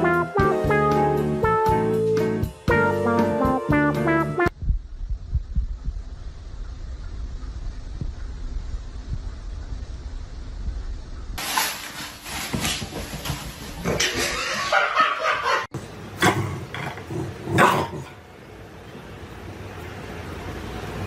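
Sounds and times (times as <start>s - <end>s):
dog barking: 17.6s - 18.1s.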